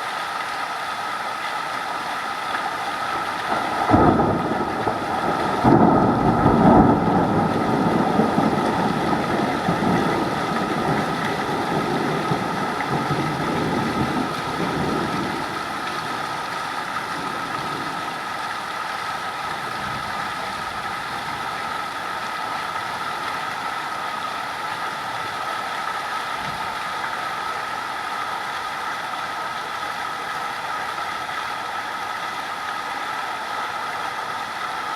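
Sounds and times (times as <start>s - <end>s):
heavy rain: 0.0s - 34.9s
low rumble of thunder: 3.2s - 18.2s.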